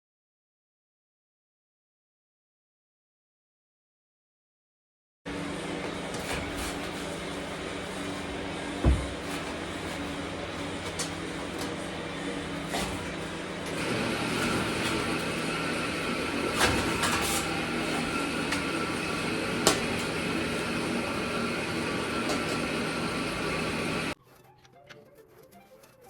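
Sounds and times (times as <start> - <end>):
steady mechanical hum: 5.3 - 24.2.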